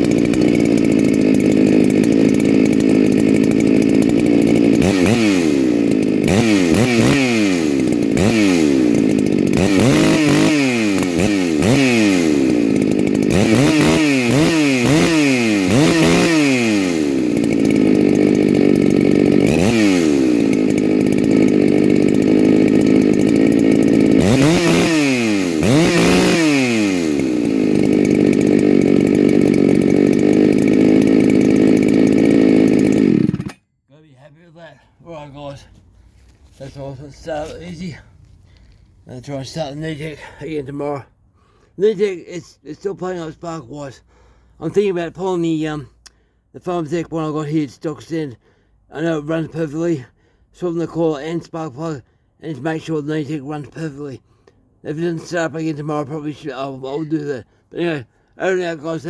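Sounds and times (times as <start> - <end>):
chainsaw revving: 0.0 - 33.6, 34.8 - 40.4, 54.9 - 59.0.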